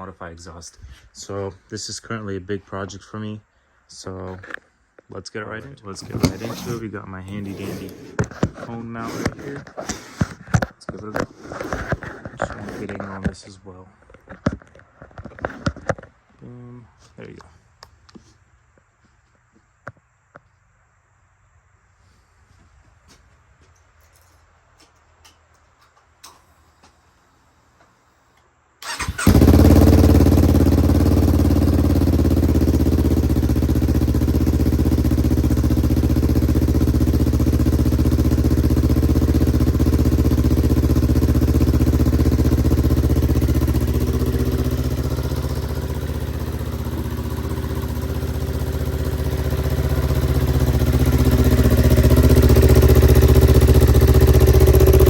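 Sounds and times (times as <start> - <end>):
motorcycle engine idling: 28.8 - 55.0.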